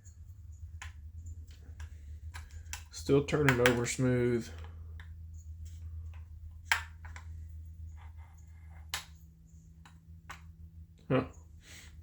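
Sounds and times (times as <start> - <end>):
metal parts clicking and tapping: 0.0 - 5.2
steady low hum: 0.0 - 12.0.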